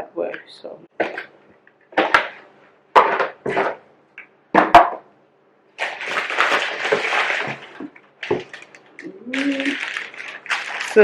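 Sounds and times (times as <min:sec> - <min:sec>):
packaging rustling and crinkling: 0:05.8 - 0:11.0.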